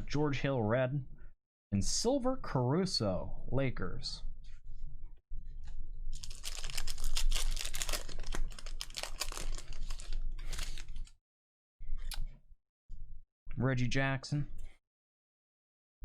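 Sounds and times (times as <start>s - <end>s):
wrapper crinkling and tearing: 6.1s - 11.2s
cards being handled: 6.2s - 11.1s.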